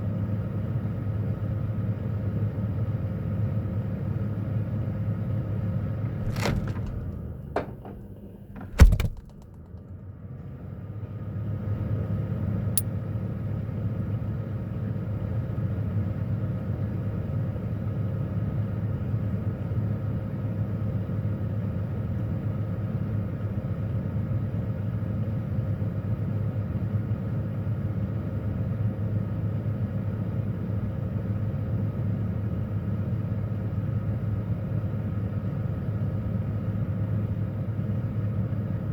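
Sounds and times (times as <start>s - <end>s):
refrigerator hum: 5.9s - 9.6s
knocks inside fridge: 6.1s - 9.6s
loud thump: 6.1s - 9.6s.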